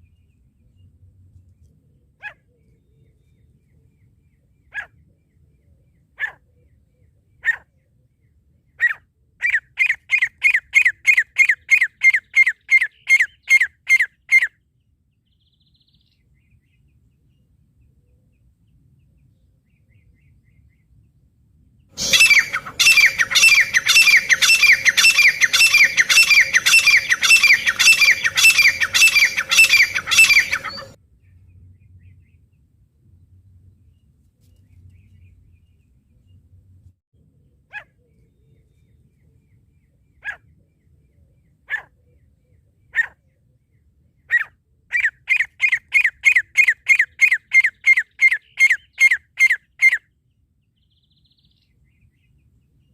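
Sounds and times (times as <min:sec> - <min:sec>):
francolin calling: 0:22.0 - 0:31.0.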